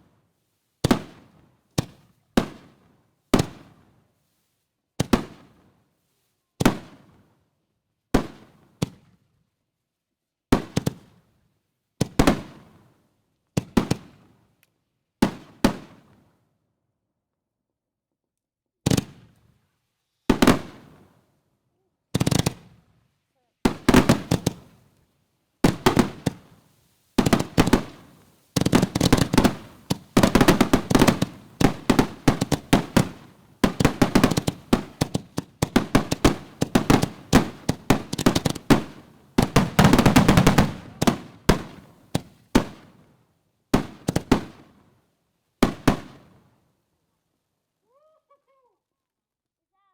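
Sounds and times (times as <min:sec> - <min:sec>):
firework crackle: 0:20.3 - 0:21.2, 0:22.2 - 0:22.9, 0:23.6 - 0:43.1, 0:43.8 - 0:44.8
firework bangs echoing: 0:23.7 - 0:24.8, 0:25.6 - 0:26.6, 0:27.2 - 0:42.9, 0:43.8 - 0:44.6.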